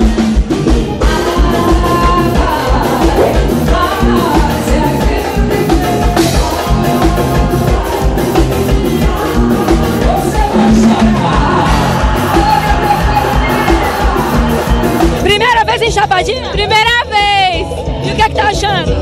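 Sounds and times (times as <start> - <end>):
upbeat music with driving beat: 0.0 - 19.0
person singing: 1.0 - 15.2.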